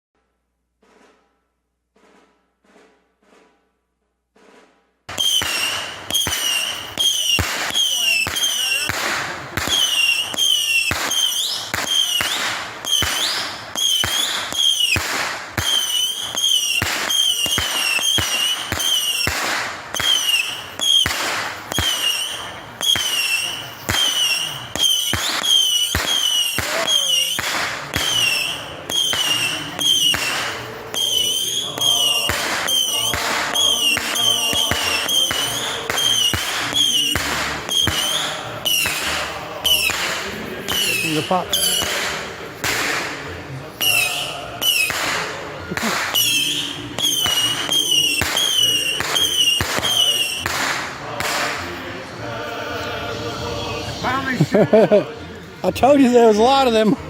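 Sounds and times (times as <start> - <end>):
fireworks bangs: 0.7 - 57.0
high whistling tone: 5.1 - 8.9, 9.6 - 15.0, 15.6 - 42.3, 43.8 - 45.0, 45.9 - 50.5
steady chord-like tones: 27.0 - 47.7, 50.2 - 57.0.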